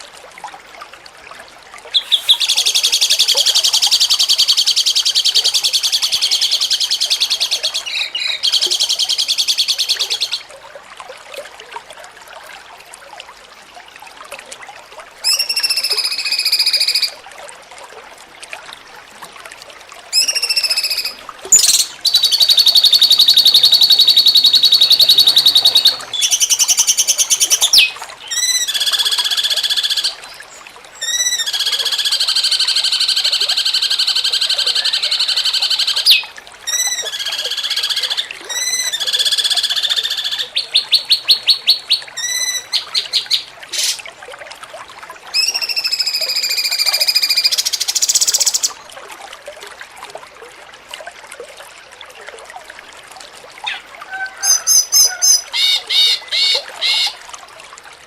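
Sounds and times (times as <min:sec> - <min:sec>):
bird singing whistles and trills: 0:02.0 - 0:10.4, 0:20.2 - 0:30.1, 0:34.0 - 0:44.0.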